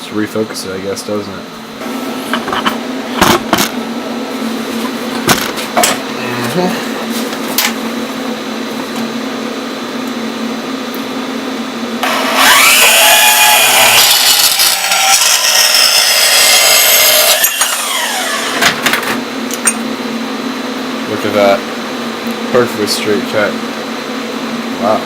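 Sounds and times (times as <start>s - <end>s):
bandsaw cutting metal whining hiss: 12.0s - 18.6s
bandsaw running: 12.0s - 18.9s.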